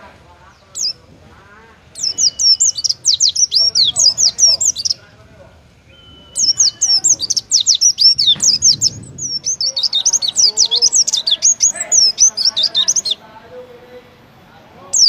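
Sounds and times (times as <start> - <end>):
bird singing high sweeping chirps: 1.9 - 5.1, 5.7 - 13.2.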